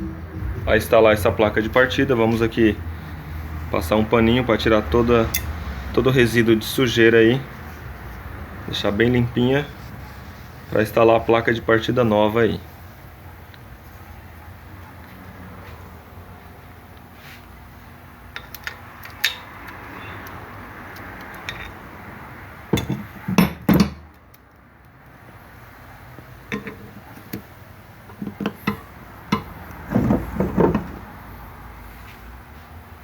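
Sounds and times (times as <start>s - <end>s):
metal tools clinking: 21.2s - 21.8s, 26.4s - 27.1s.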